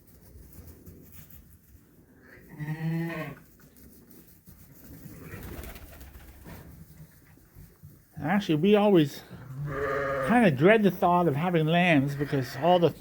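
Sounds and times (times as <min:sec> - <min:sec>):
sheep bleating: 0:02.5 - 0:03.4, 0:09.5 - 0:10.5, 0:11.7 - 0:13.0.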